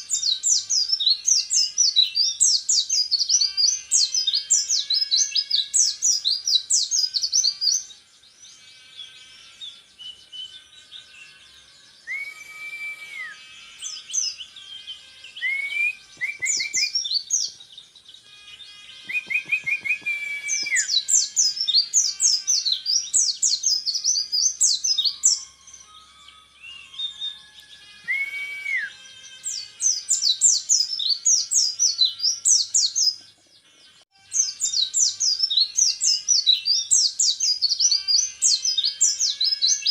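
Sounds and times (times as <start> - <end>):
short level whistled notes: 12.1 - 13.6, 15.4 - 17.0, 19.0 - 21.1, 28.0 - 29.0.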